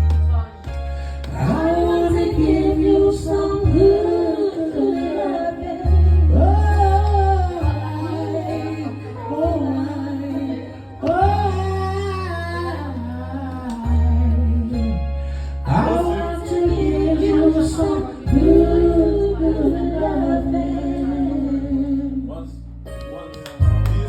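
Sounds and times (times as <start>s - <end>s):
bass notes: 0.0s - 24.0s
person singing long wavering notes: 1.4s - 22.3s.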